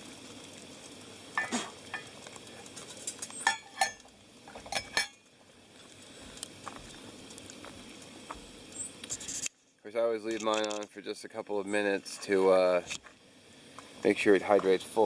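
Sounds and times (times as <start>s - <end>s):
metal utensil scraping cooking pot: 2.8s - 5.2s.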